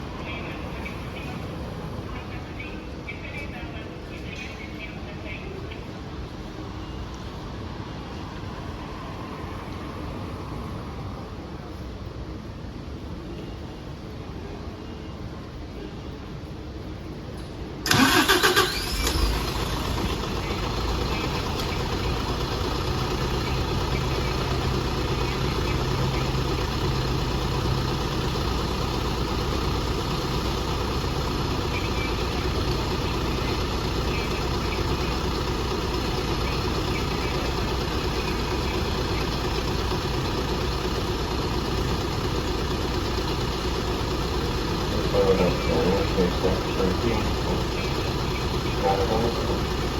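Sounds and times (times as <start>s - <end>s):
diesel engine idling: 17.8s - 49.9s
starter motor cranking: 17.9s - 49.9s.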